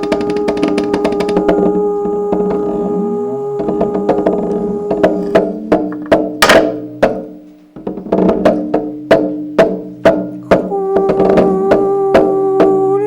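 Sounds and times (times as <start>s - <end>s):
sharp wood block knocks: 3.6s - 12.8s.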